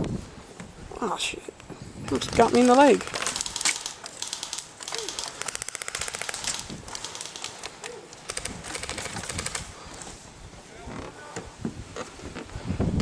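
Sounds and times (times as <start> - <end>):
airsoft guns firing: 2.1 - 9.7.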